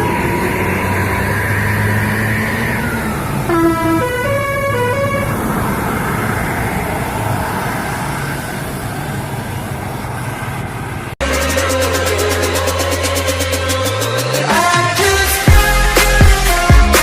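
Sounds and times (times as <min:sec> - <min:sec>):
traffic noise: 0:00.0 - 0:16.7
bus horn playing a tune: 0:03.5 - 0:05.6.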